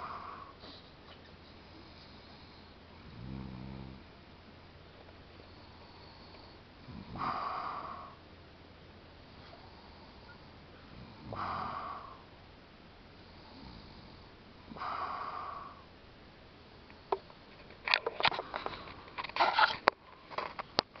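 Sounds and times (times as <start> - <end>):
person snoring: 1.8 - 4.0, 5.7 - 8.2, 10.9 - 12.3.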